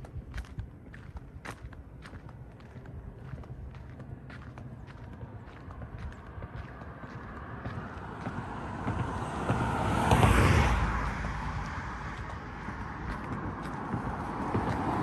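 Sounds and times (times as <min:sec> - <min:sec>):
car driving past: 0:06.4 - 0:15.0.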